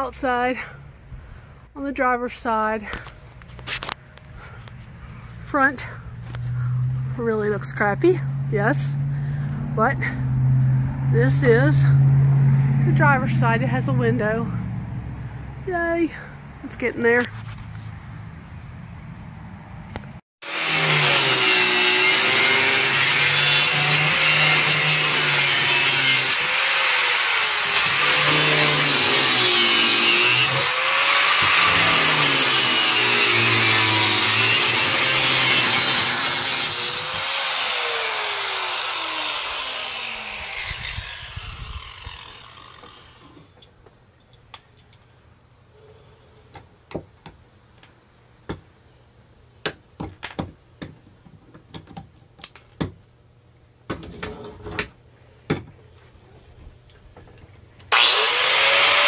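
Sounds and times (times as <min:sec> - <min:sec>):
power saw cutting wood: 0:20.4 - 0:43.6, 0:57.9 - 0:59.0
saw blade spinning down: 0:20.5 - 0:43.4, 0:57.9 - 0:59.0.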